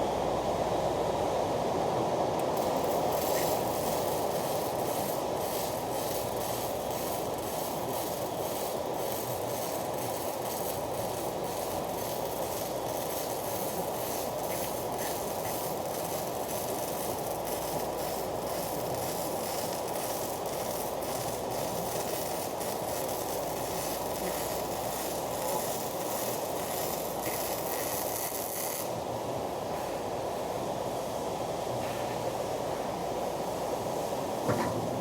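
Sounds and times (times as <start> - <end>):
welding arc crackling hiss: 2.3 - 35.0.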